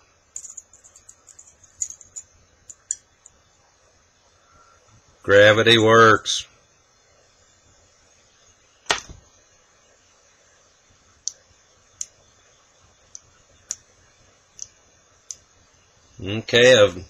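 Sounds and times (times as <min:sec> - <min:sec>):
small metal tool clicks: 0:00.4 - 0:03.4.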